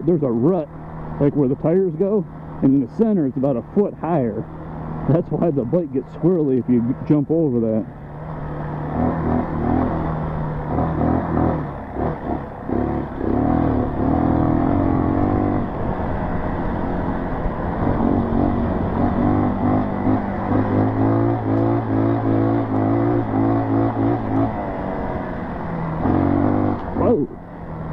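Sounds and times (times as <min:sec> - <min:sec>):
dirt bike engine revving: 0:08.5 - 0:16.1, 0:17.8 - 0:27.4.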